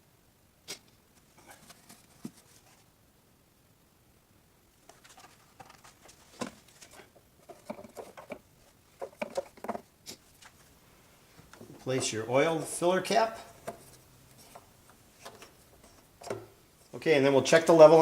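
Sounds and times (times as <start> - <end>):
plastic bottles and funnel handled: 4.8 - 17.0.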